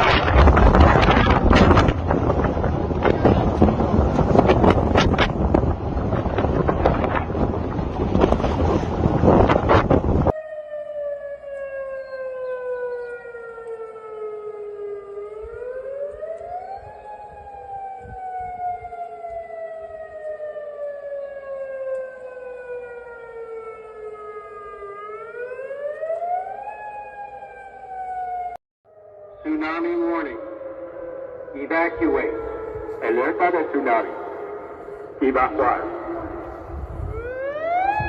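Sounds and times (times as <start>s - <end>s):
wind noise on microphone: 0.0s - 10.4s, 16.7s - 19.4s, 32.4s - 33.0s, 36.0s - 38.0s
warning siren wailing: 0.0s - 38.0s.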